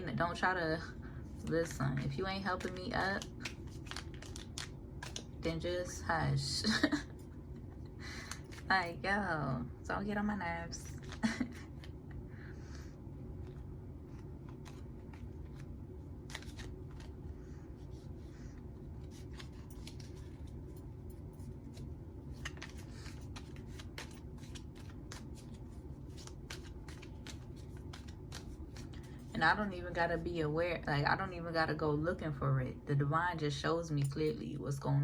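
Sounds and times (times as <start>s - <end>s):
steady low hum: 0.0s - 35.0s
cards being shuffled: 1.3s - 5.4s, 8.2s - 8.7s, 10.8s - 12.0s, 13.4s - 20.7s, 21.4s - 29.3s.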